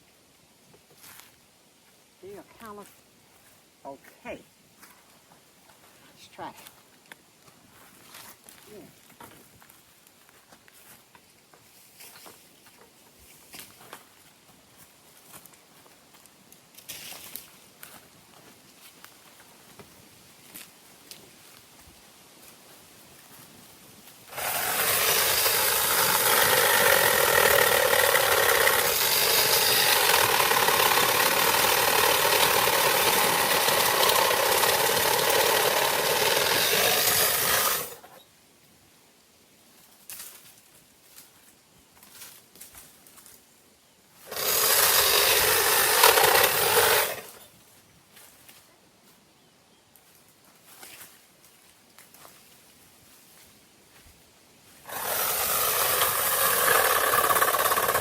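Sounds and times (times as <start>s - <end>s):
power tool cutting branches: 24.3s - 38.2s, 44.2s - 47.5s, 54.8s - 58.0s.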